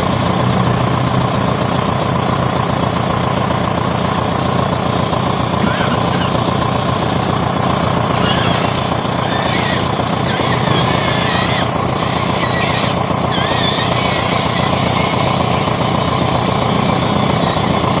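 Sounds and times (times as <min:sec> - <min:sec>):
toy excavator motor rattling: 0:05.6 - 0:06.6, 0:07.8 - 0:18.0.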